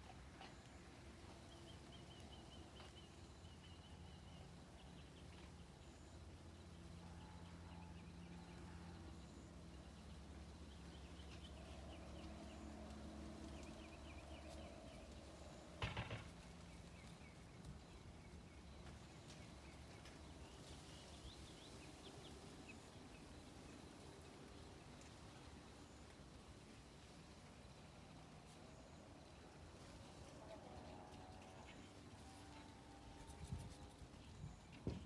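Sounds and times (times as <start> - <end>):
sharp knock: 15.8 - 16.3.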